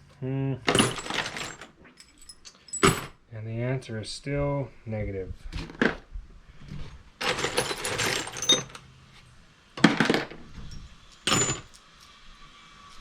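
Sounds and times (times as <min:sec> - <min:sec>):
metal bolts and nuts clattering: 0:00.7 - 0:03.2, 0:07.2 - 0:08.9, 0:09.8 - 0:11.9.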